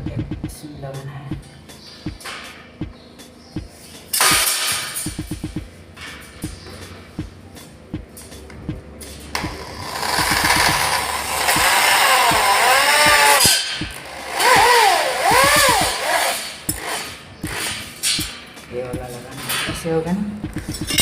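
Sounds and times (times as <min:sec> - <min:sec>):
power drill driving screws into metal: 0:09.8 - 0:18.2.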